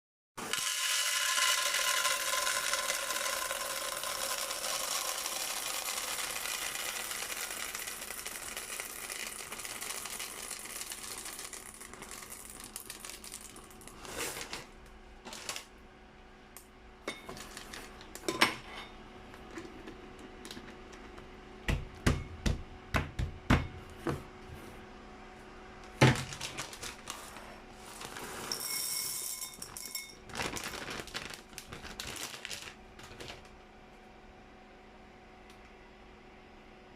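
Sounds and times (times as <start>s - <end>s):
dry macaroni rattling: 1.0s - 14.1s.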